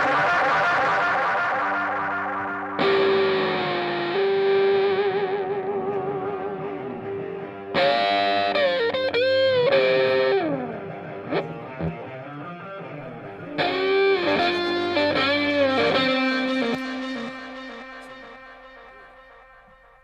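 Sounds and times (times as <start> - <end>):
distorted electric guitar lead: 0.0 - 20.0.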